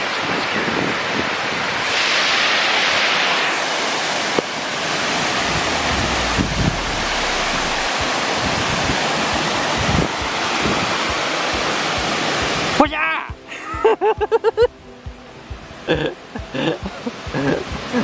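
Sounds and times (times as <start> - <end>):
waterfall rushing: 1.8 - 13.5
wind rumbling on microphone: 4.7 - 11.7.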